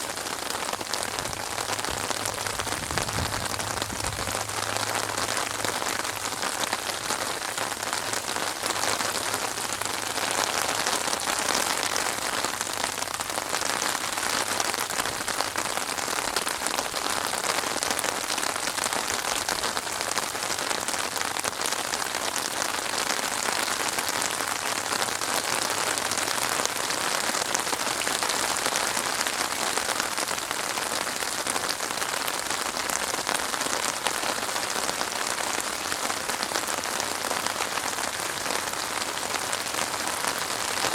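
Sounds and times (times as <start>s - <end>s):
steady rainfall: 0.0s - 40.9s.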